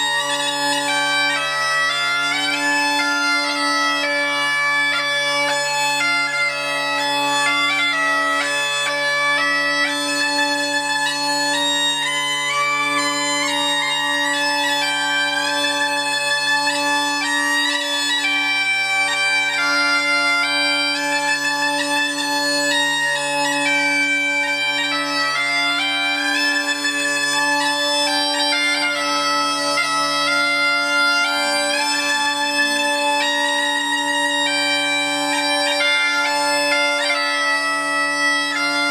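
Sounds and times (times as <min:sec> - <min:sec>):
bagpipes playing a tune: 0:00.0 - 0:38.9.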